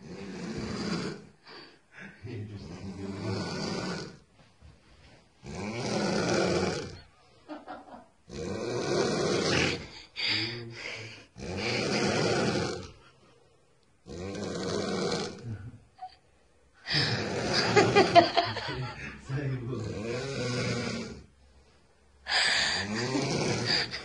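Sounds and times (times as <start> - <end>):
woman snoring: 0.0 - 1.3, 2.8 - 4.2, 5.4 - 7.1, 8.3 - 13.0, 14.1 - 15.5, 16.9 - 18.5, 19.9 - 21.3, 22.3 - 24.0.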